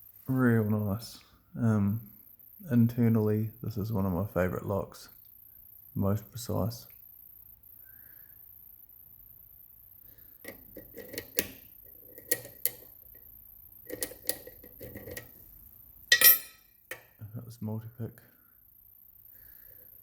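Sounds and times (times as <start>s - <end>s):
lock and picking tools clicking: 10.5s - 12.9s, 13.9s - 15.3s
lock rattle: 13.9s - 15.3s.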